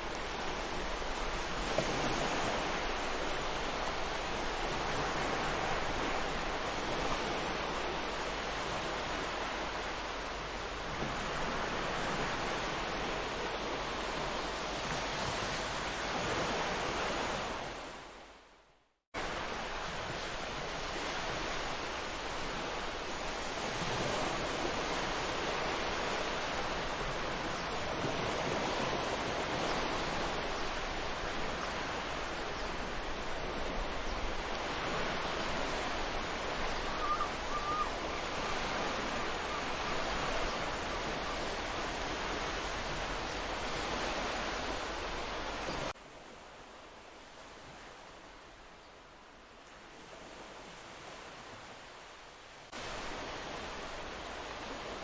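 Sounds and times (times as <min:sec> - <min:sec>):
ocean waves breaking: 0:00.0 - 0:18.0, 0:19.2 - 0:48.6, 0:49.8 - 0:55.0
faint bird call: 0:36.8 - 0:38.0.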